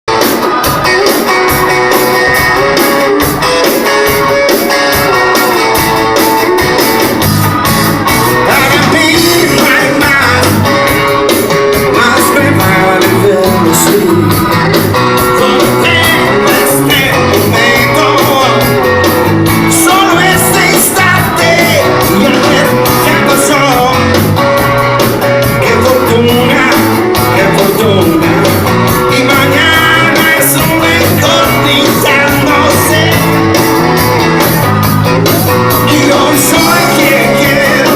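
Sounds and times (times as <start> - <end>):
drums: 0.1 - 37.9
guitar: 0.1 - 37.9
person singing: 8.2 - 37.9.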